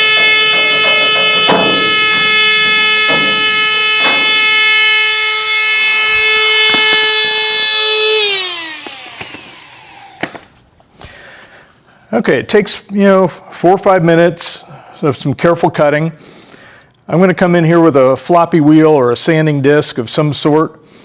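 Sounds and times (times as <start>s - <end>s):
cutting tool winding down: 0.0s - 10.5s
power cut-off tool cutting metal: 0.0s - 10.6s.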